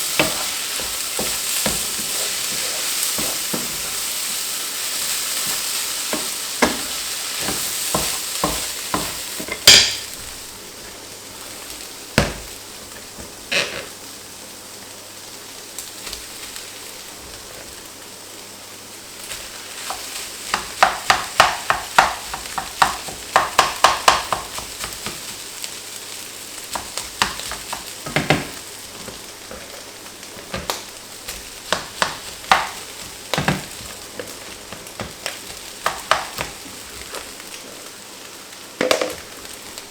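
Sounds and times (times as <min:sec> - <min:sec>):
rice sizzling in a hot pan: 0:00.0 - 0:39.9
utensil scraping against pan: 0:00.2 - 0:04.1.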